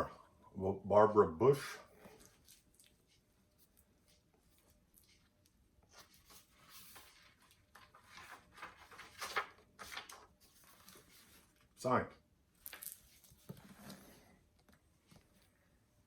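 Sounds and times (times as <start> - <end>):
book pages turning: 5.8 - 11.7.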